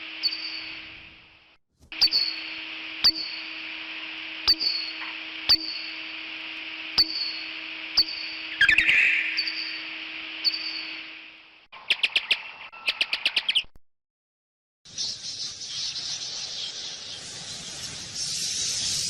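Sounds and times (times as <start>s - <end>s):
low hum: 0.0s - 11.7s
bat squeaks: 8.0s - 9.8s
steady hiss: 15.0s - 19.0s.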